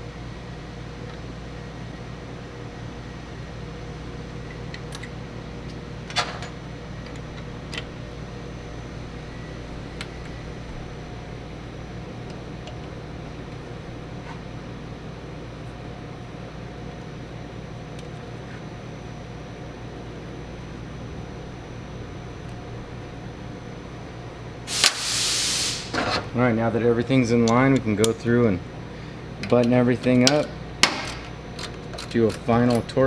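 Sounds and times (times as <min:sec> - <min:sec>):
steady mechanical hum: 0:00.0 - 0:33.0.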